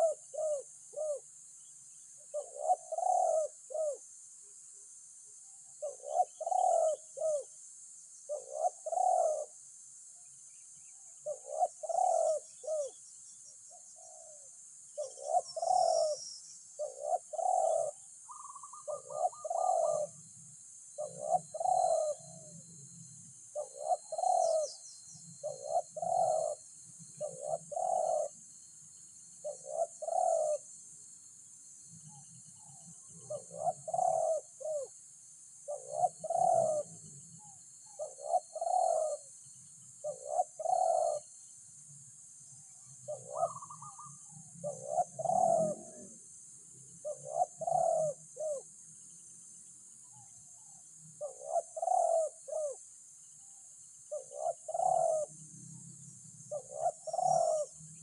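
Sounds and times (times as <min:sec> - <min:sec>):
dove cooing: 0:00.0 - 0:01.3, 0:02.2 - 0:04.1, 0:05.7 - 0:07.6, 0:08.3 - 0:09.6, 0:11.2 - 0:13.0, 0:13.8 - 0:16.2, 0:16.8 - 0:20.4, 0:21.0 - 0:22.8, 0:23.5 - 0:28.4, 0:29.4 - 0:30.8, 0:32.1 - 0:35.0, 0:35.6 - 0:39.4, 0:40.0 - 0:41.5, 0:42.9 - 0:46.3, 0:46.9 - 0:48.7, 0:50.1 - 0:52.8, 0:54.1 - 0:55.5, 0:56.4 - 0:58.0.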